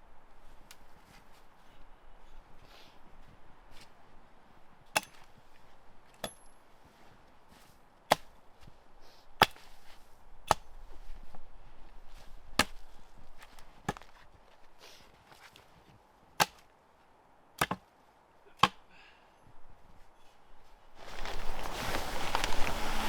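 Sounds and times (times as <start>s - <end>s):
axe chopping wood: 4.9s - 5.4s, 8.1s - 8.4s, 9.4s - 10.8s, 12.5s - 14.2s, 16.4s - 16.7s, 17.6s - 17.9s, 18.6s - 18.9s.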